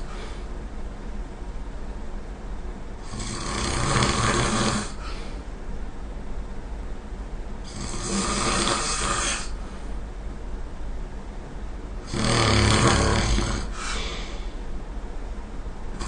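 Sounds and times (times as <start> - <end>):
person snoring: 3.0 - 5.3, 7.7 - 9.6, 12.1 - 14.5.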